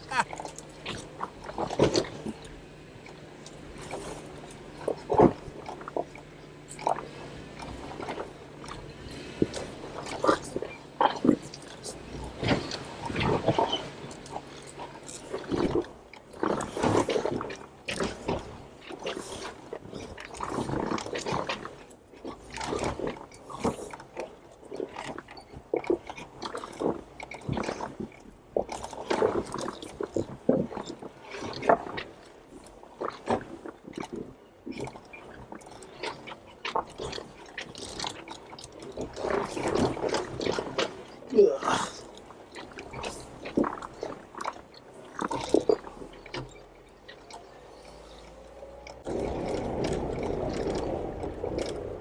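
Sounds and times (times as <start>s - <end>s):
chassis creaking: 0.0s - 21.7s, 34.8s - 52.0s
engine running low: 0.0s - 25.6s, 35.3s - 52.0s
tires crunching on stone: 0.0s - 52.0s.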